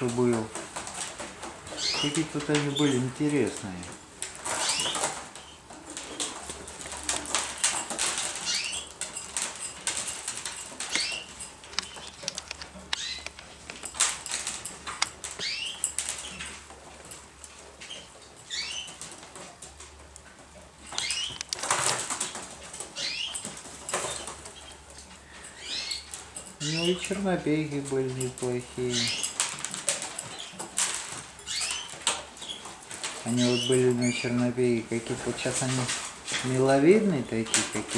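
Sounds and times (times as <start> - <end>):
pigeon wings flapping: 0.0 - 12.5
scuffling and sharp clicks: 0.0 - 37.9.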